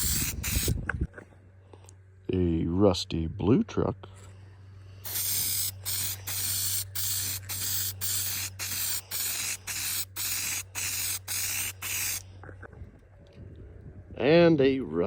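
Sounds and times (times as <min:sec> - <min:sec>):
aerosol can spraying bursts: 0:00.0 - 0:00.8, 0:05.0 - 0:12.2.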